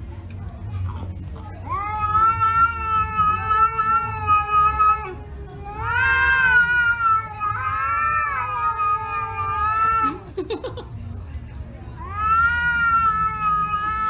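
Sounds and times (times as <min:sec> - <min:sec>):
cats yowling: 0:01.4 - 0:10.3, 0:11.9 - 0:14.0.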